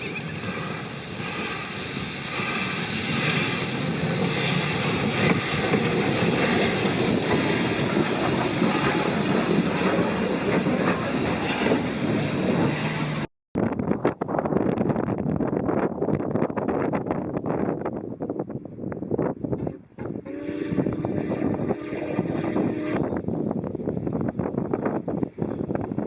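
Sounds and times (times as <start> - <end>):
train wheels clattering on rails: 0.0 - 13.2.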